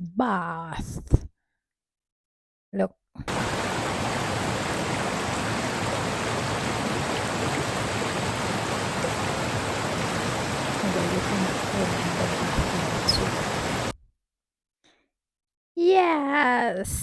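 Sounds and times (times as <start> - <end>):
forest stream rushing: 3.3 - 13.9.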